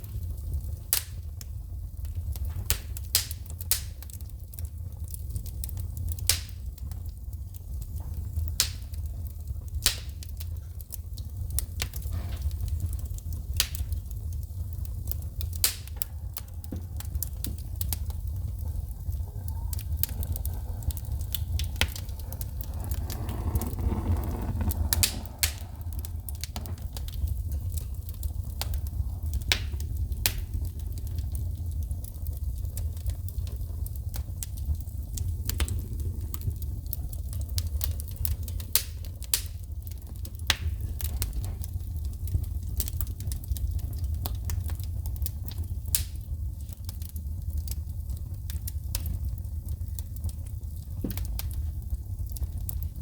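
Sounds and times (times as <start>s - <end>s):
wood fire crackling: 0.0s - 53.0s
steady low rumble: 17.6s - 28.1s
sparks popping and snapping: 19.7s - 31.3s.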